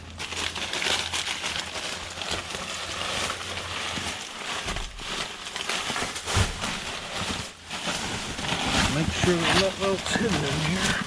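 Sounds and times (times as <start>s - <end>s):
plastic bags rustling: 0.0s - 11.0s
dull thump: 6.3s - 6.8s.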